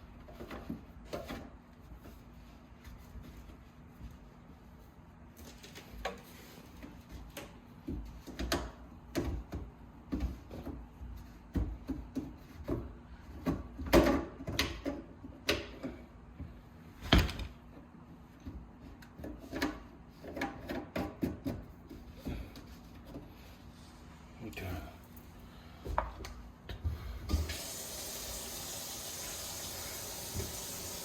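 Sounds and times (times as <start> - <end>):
plastic drain pipe knocking and clattering: 7.8 - 10.8, 11.5 - 16.0.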